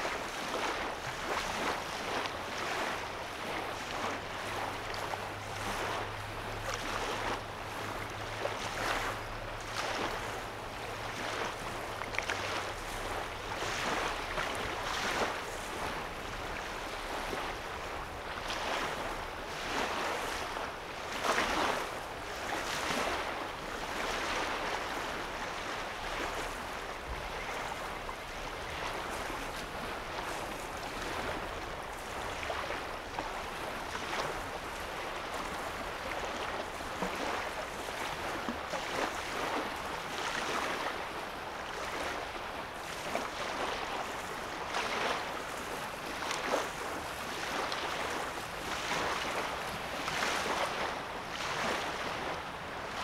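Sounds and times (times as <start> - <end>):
waves lapping on sandy shore: 0.0 - 53.0.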